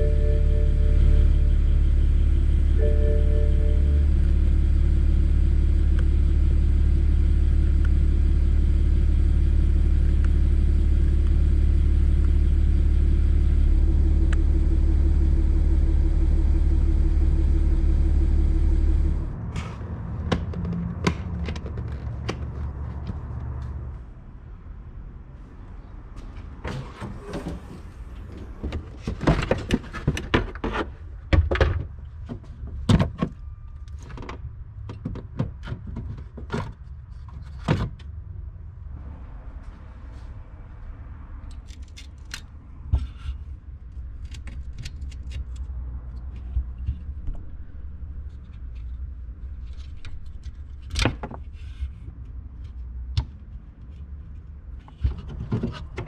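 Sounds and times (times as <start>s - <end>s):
low steady hum: 0.0s - 34.8s.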